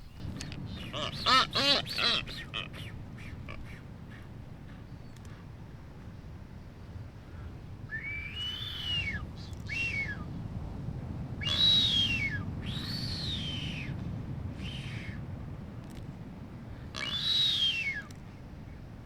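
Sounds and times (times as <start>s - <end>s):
bird whistling: 0.0s - 4.0s, 7.9s - 10.4s, 11.4s - 14.0s, 14.6s - 15.2s, 17.0s - 18.2s.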